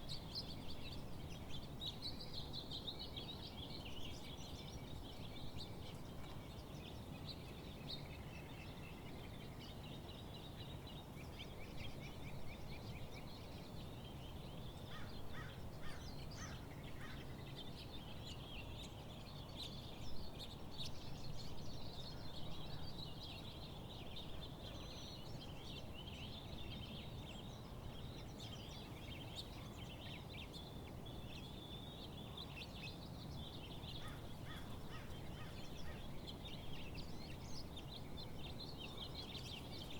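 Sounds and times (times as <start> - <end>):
birds singing and chirping: 20.0 - 39.9.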